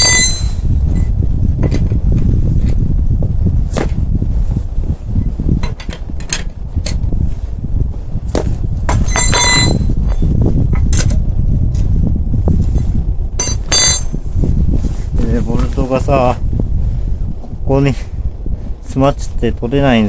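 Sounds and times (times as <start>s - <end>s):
ringing metallic clink: 0.0s - 1.1s, 8.9s - 10.3s, 13.4s - 14.2s
metal tools clinking: 0.0s - 1.8s, 5.6s - 7.0s, 8.9s - 11.2s, 13.4s - 14.2s
wind on microphone: 0.0s - 20.0s.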